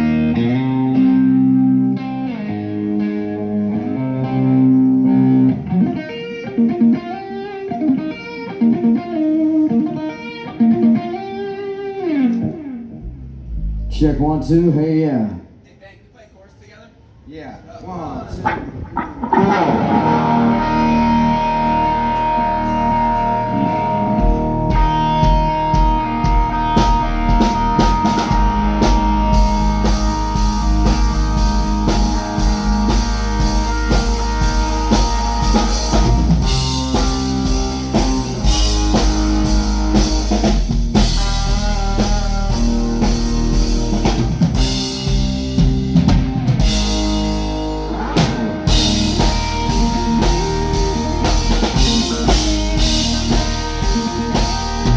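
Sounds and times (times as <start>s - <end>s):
live band playing: 18.4s - 54.9s
cymbals: 46.6s - 54.9s.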